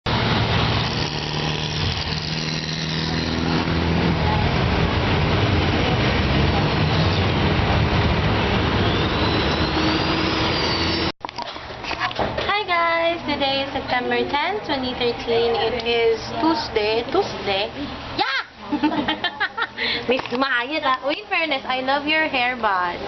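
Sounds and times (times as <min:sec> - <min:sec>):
vehicle engine running: 0:00.1 - 0:11.1
road and traffic noise: 0:00.1 - 0:23.0
faint rising tone: 0:08.5 - 0:11.1.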